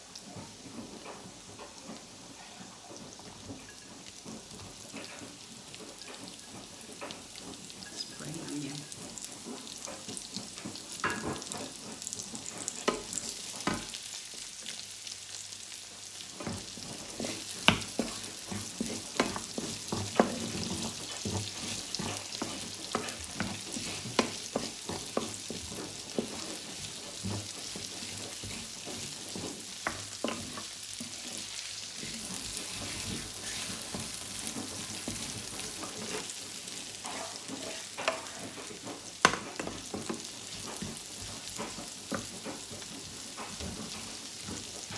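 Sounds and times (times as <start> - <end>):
food sizzling in hot oil: 0.0 - 44.9
spatula scraping a pan: 15.7 - 44.9.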